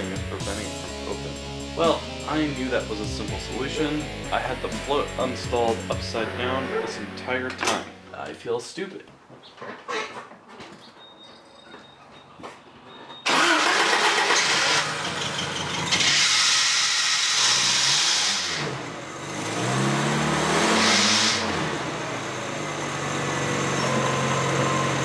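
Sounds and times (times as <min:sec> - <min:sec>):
car engine starting and revving: 0:00.0 - 0:08.0, 0:13.3 - 0:25.0.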